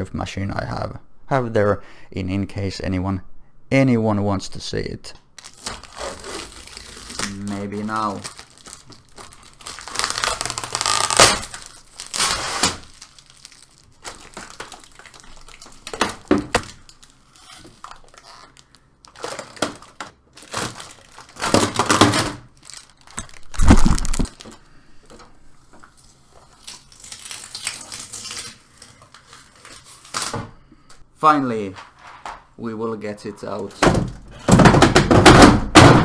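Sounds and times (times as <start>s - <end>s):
cardboard crumpling and tearing: 5.4s - 24.6s, 25.9s - 30.4s
knocks: 33.8s - 36.0s.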